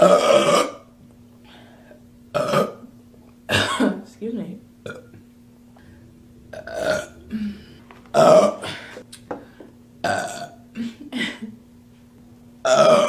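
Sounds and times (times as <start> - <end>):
woman burping: 0.0 - 0.8, 2.4 - 2.8, 10.0 - 11.5, 12.7 - 13.0.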